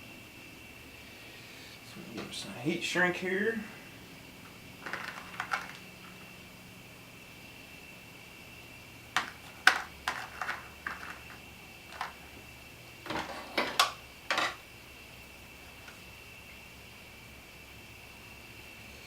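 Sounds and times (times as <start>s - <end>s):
faint high whine: 0.0s - 19.0s
small tools clicking and clattering: 4.8s - 6.2s, 9.2s - 12.2s, 13.0s - 14.6s.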